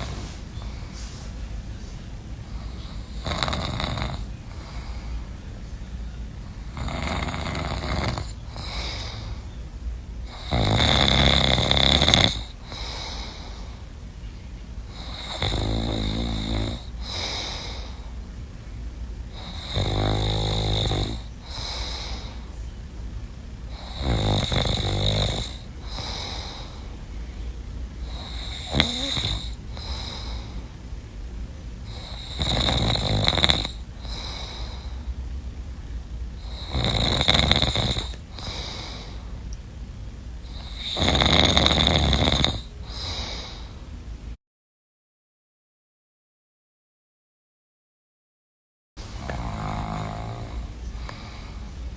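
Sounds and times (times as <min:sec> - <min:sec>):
loud snoring: 0:02.6 - 0:04.9, 0:06.6 - 0:09.4, 0:10.3 - 0:13.5, 0:14.9 - 0:18.0, 0:19.3 - 0:22.4, 0:23.7 - 0:26.8, 0:28.0 - 0:30.6, 0:31.9 - 0:35.0, 0:36.4 - 0:39.2, 0:40.5 - 0:43.7, 0:49.2 - 0:51.5.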